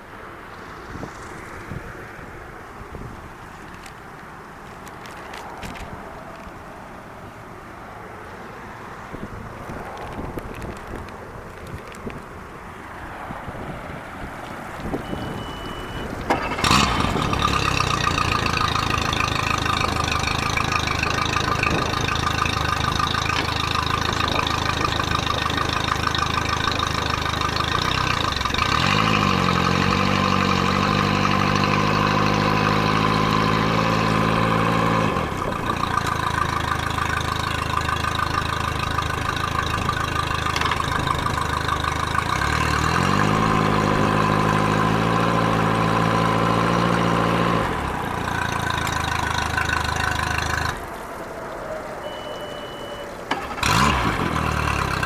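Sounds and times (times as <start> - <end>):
outboard motor running: 15.2 - 50.8, 53.2 - 55.0.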